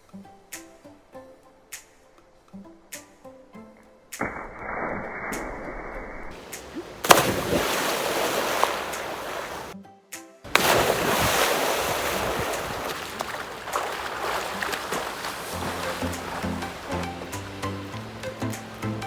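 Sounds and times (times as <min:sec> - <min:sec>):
music: 0:00.0 - 0:04.5, 0:06.3 - 0:19.0
person splashing into water: 0:04.2 - 0:09.8, 0:10.5 - 0:19.0
water churning and splashing: 0:04.2 - 0:09.8, 0:10.5 - 0:19.0.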